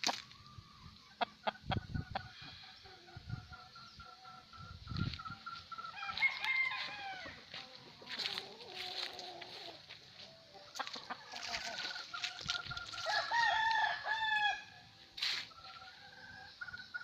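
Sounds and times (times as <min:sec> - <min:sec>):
hens clucking: 0:00.0 - 0:14.5
roosters crowing: 0:05.8 - 0:10.0, 0:10.8 - 0:17.0.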